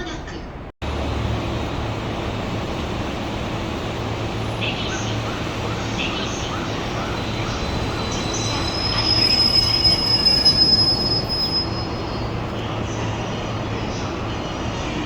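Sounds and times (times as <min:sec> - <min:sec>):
diesel locomotive engine drone: 0:00.0 - 0:15.0
freight wagons squealing: 0:03.5 - 0:14.0.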